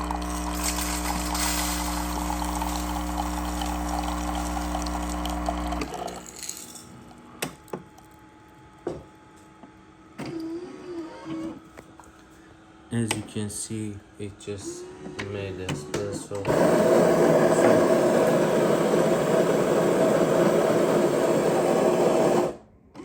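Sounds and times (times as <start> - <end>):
coffee dripping: 0.0 - 6.2
espresso machine pump humming: 0.0 - 6.4, 16.4 - 22.6
coffee pouring into cup: 0.0 - 6.6.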